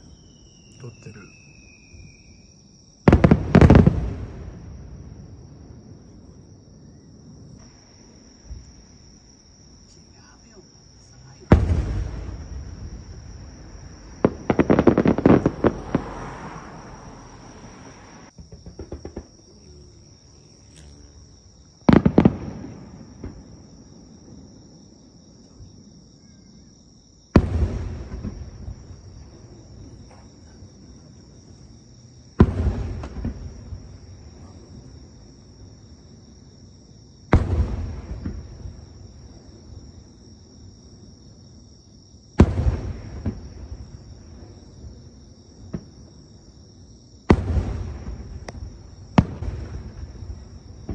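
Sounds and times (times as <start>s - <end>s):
fireworks cracks and bangs: 3.0s - 6.6s, 7.2s - 19.6s, 21.8s - 24.5s, 27.3s - 31.7s, 32.3s - 36.5s, 37.2s - 40.4s, 42.4s - 46.4s, 47.2s - 50.9s
firework shell bursts echoing: 11.6s - 16.3s.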